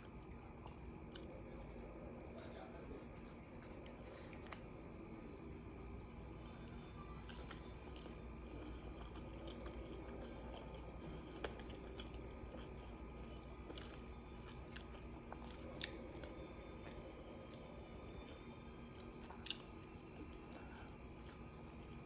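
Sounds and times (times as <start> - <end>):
person chewing: 3.1 - 4.8, 7.2 - 21.9.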